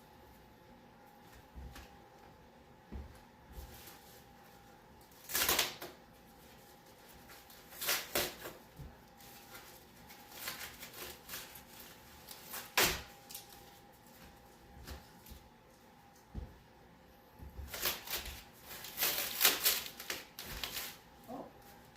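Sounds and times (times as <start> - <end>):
faint steady hum: 0.0 - 21.9
plastic packaging crinkling: 6.5 - 14.2, 17.7 - 21.1.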